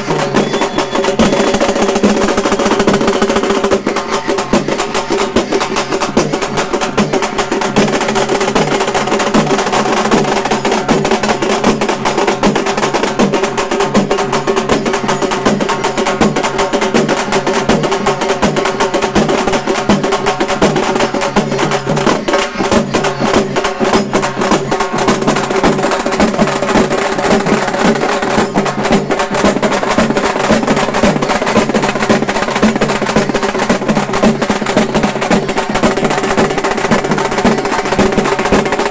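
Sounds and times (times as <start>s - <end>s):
frame drums played with sticks: 0.0s - 38.9s.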